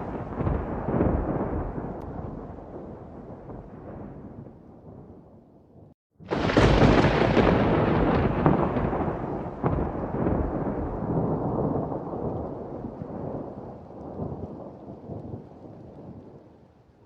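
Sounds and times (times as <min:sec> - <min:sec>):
thunder crack: 0:00.0 - 0:05.2, 0:06.2 - 0:13.5
thunder rumble: 0:00.0 - 0:05.4, 0:06.2 - 0:16.4.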